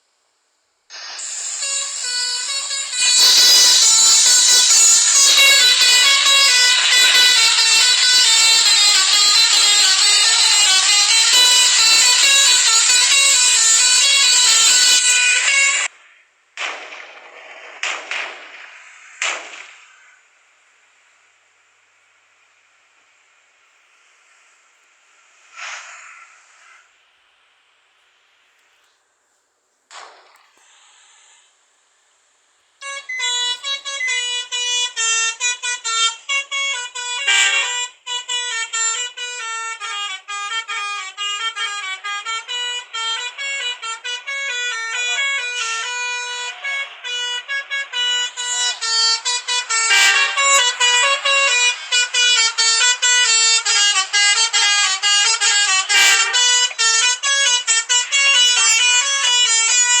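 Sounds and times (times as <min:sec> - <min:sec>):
multi-tone musical bus horn: 0:00.9 - 0:16.0, 0:32.8 - 1:00.0.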